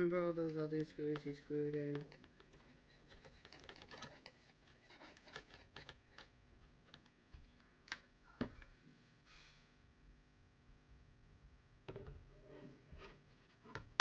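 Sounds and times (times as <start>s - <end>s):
small screws and plastic clicking: 0.8s - 6.3s.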